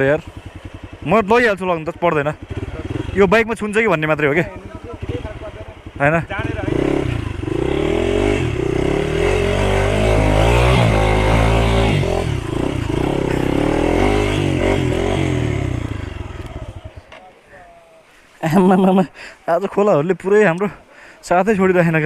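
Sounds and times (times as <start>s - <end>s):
motorcycle engine revving: 0.0s - 17.1s.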